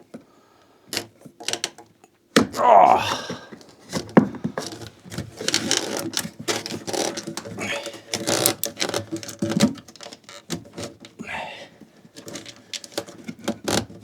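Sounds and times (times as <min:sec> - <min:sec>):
hands handling electrical cable: 0:02.4 - 0:11.2.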